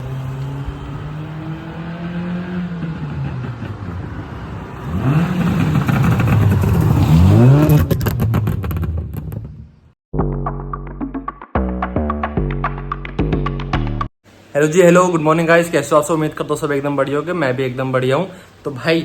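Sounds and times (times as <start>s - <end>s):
car engine revving: 0.0s - 9.5s
exhaust pops and crackles: 5.1s - 9.8s.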